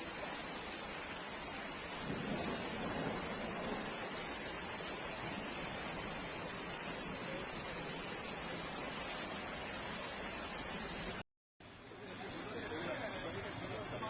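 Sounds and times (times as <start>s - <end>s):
flood water rushing: 0.0s - 14.0s.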